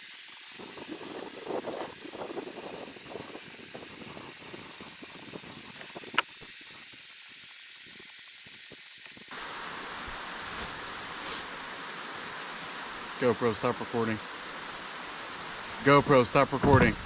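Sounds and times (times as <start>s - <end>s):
steady hissing noise: 0.0s - 17.0s
sharp click: 6.0s - 6.4s.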